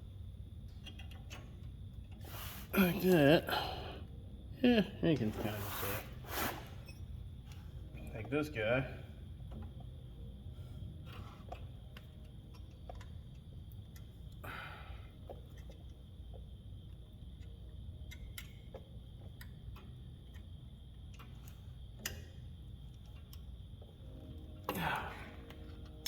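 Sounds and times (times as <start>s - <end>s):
steady low hum: 0.0s - 26.0s
metallic clicks of pry bar: 22.0s - 22.4s.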